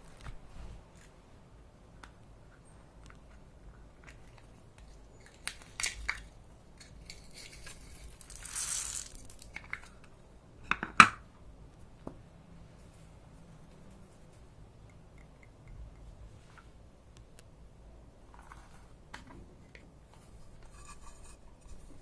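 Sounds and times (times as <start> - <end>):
clicks and crinkles of handling: 2.0 - 10.2
rustling hiss: 7.2 - 10.0.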